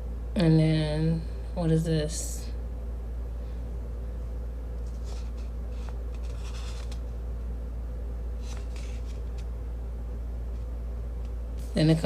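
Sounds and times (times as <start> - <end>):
steady low hum: 0.0 - 12.0
packaging rustling: 4.8 - 7.1, 8.4 - 9.5.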